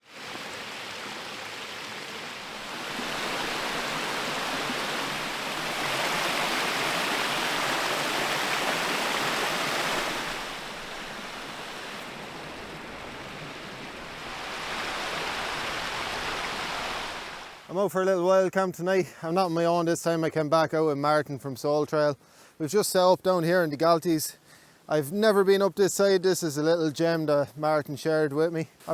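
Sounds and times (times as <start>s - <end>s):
stream rushing: 0.0s - 17.7s.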